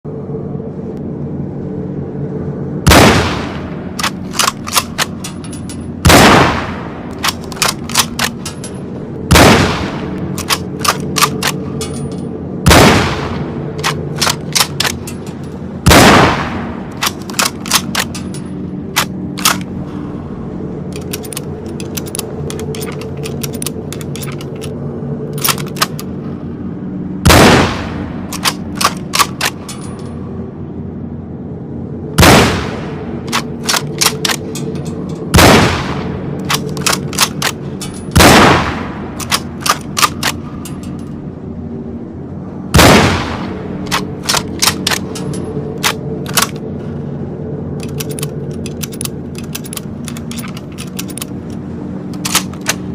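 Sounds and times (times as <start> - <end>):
steady low hum: 0.0 - 52.9
rifle shots: 2.9 - 5.2, 6.0 - 8.4, 9.3 - 11.6, 12.7 - 15.0, 15.9 - 18.1, 27.3 - 29.5, 35.3 - 40.4, 42.8 - 45.1.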